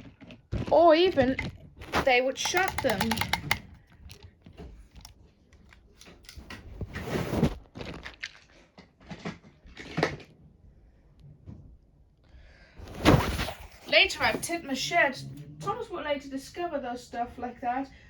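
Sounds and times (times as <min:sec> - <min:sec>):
irregular clicks and taps: 0:01.8 - 0:05.8
scraping rustle: 0:06.3 - 0:08.1.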